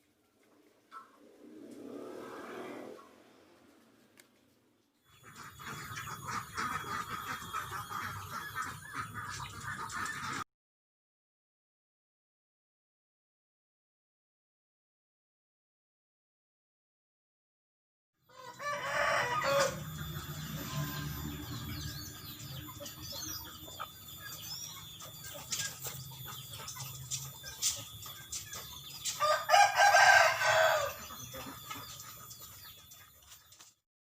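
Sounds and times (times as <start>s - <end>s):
small birds chirping: 0.4s - 10.4s, 19.7s - 33.8s
rooster crowing: 18.3s - 23.3s, 29.2s - 31.2s.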